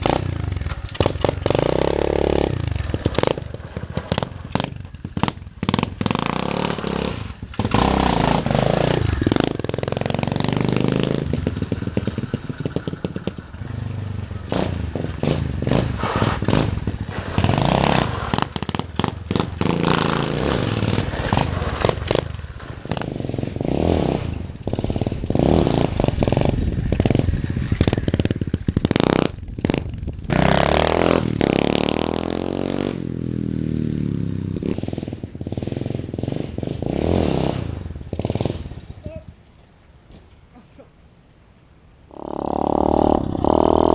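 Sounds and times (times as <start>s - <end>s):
engine knocks and rattles: 0.0s - 30.4s
motorbike engine revving: 0.0s - 39.2s, 42.1s - 43.9s.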